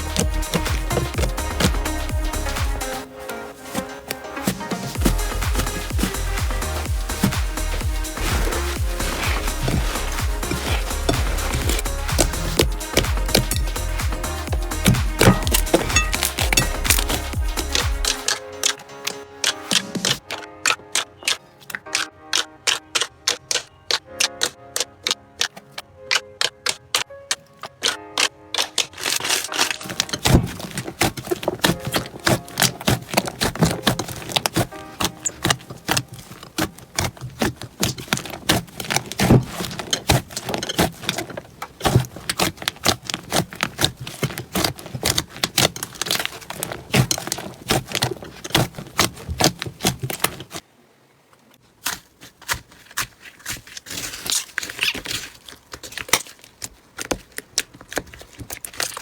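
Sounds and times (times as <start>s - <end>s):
slime crackling and clicking: 5.3s - 50.6s.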